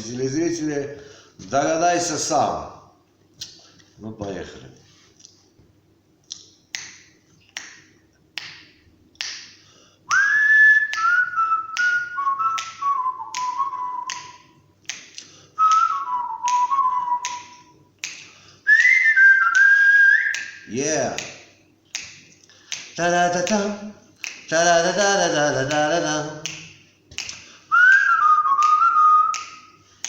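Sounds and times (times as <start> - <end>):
finger snaps: 3.4 - 3.9, 6.2 - 24.6, 25.6 - 30.0
man whistling a tune: 10.1 - 14.5, 15.6 - 17.7, 18.7 - 20.7, 27.7 - 29.8.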